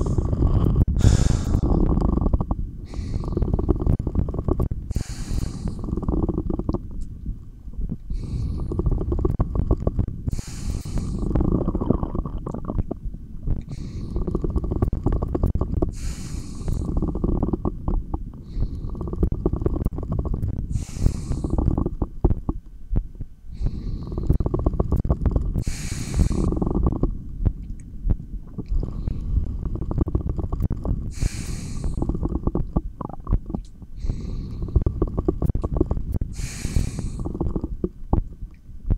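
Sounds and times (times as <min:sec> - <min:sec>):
deep breathing through stethoscope: 0:00.0 - 0:06.7, 0:08.1 - 0:12.3, 0:13.6 - 0:17.6, 0:18.4 - 0:22.0, 0:23.5 - 0:27.0, 0:28.7 - 0:32.7, 0:33.9 - 0:37.8
low rumbling and thumping: 0:00.0 - 0:38.9.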